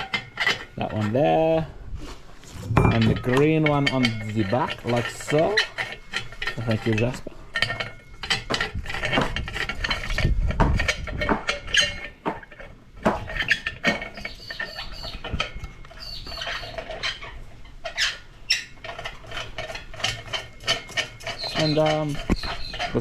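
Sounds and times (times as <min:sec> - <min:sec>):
metallic clinks and knocks: 0:00.0 - 0:01.3, 0:02.5 - 0:23.0
short high squeaks: 0:13.4 - 0:18.8.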